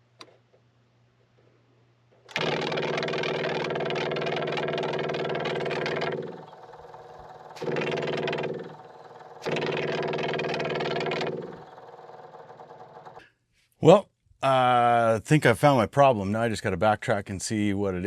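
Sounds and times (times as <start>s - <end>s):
electric fuel pump buzzing: 2.3s - 13.2s.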